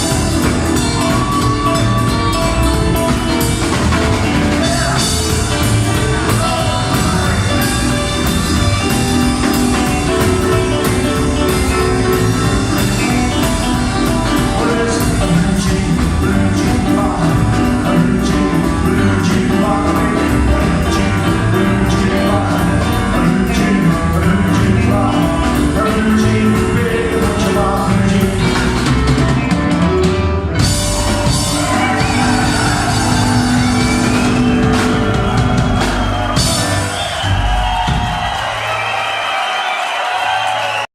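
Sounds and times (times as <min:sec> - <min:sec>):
rockabilly band playing: 0:00.0 - 0:40.9
man singing: 0:04.2 - 0:29.4, 0:30.6 - 0:35.5.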